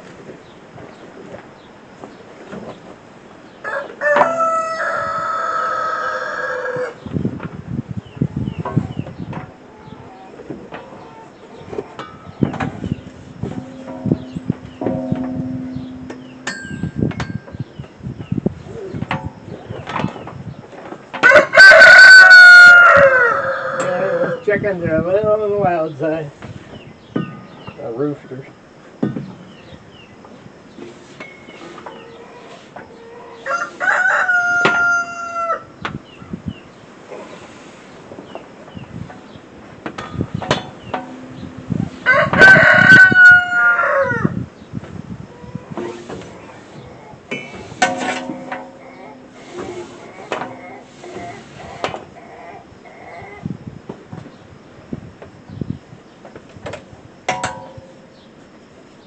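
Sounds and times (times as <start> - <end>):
rooster crowing: 3.6 - 7.0, 21.2 - 24.4, 33.2 - 35.7, 41.9 - 44.4
sharp knocks: 12.4 - 17.7.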